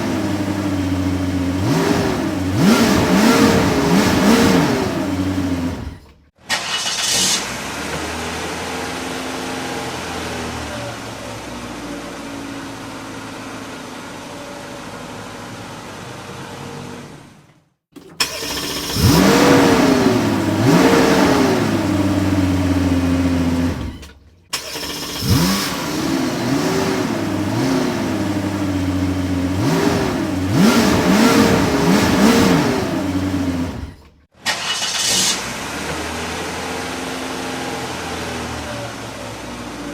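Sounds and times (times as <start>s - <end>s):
car engine running: 0.0s - 6.3s, 18.2s - 34.3s
car engine revving: 0.0s - 14.0s, 18.2s - 39.9s.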